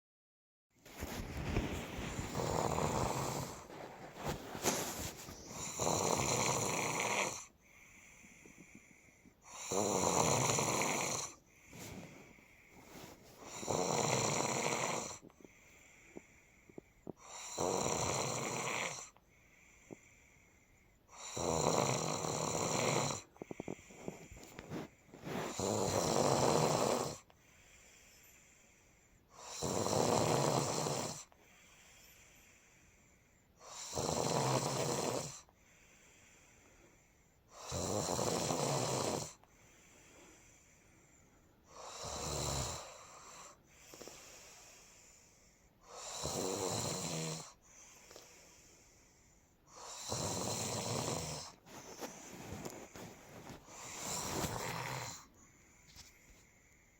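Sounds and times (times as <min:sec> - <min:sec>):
faint breathing: 0:00.9 - 0:17.6, 0:18.4 - 0:21.2, 0:22.1 - 0:26.3, 0:27.2 - 0:29.4, 0:31.2 - 0:33.6, 0:35.4 - 0:37.5, 0:39.4 - 0:41.8, 0:42.8 - 0:45.9, 0:47.5 - 0:56.9
person snoring: 0:01.0 - 0:19.2, 0:21.1 - 0:27.3, 0:29.4 - 0:31.3, 0:33.6 - 0:35.5, 0:37.5 - 0:39.4, 0:41.7 - 0:44.4, 0:45.8 - 0:47.6, 0:49.7 - 0:55.5.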